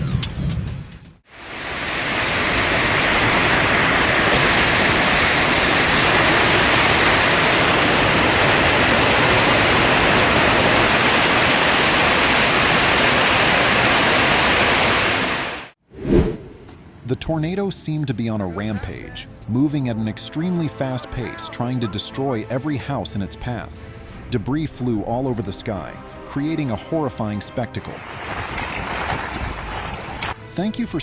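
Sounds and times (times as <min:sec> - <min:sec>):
rushing storm noise: 0:00.1 - 0:16.6.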